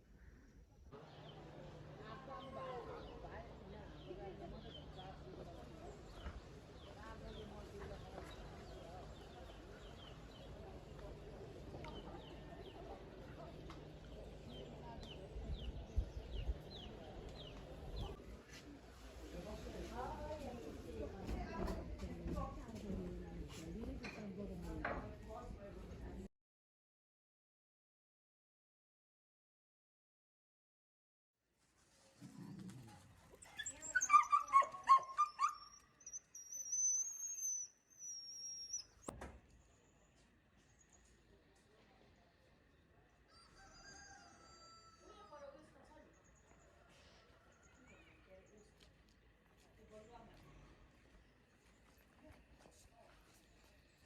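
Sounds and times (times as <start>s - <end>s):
animal yips: 33.5s - 39.0s
bird chirping: 33.6s - 41.2s.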